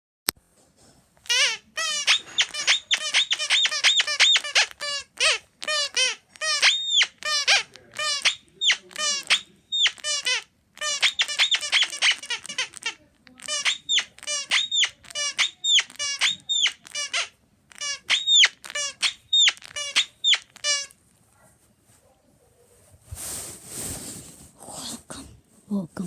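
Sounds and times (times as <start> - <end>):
high-pitched squeaks: 1.2 - 21.0.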